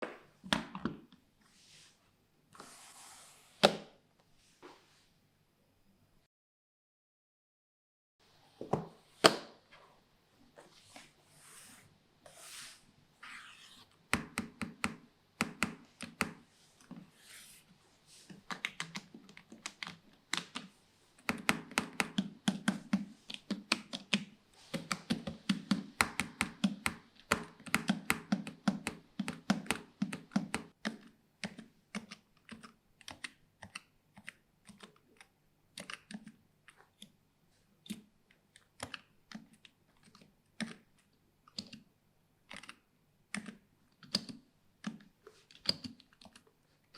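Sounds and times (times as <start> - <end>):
typing on keyboard: 18.5 - 37.1, 42.5 - 46.5.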